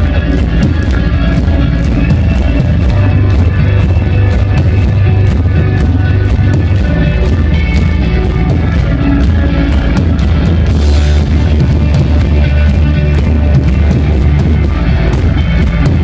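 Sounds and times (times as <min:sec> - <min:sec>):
live rock band playing: 0:00.0 - 0:16.0.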